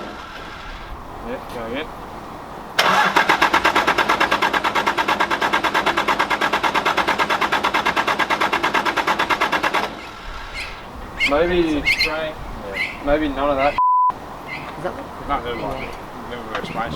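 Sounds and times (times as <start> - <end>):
starter motor cranking diesel engine: 0.0 - 1.0, 2.8 - 10.9.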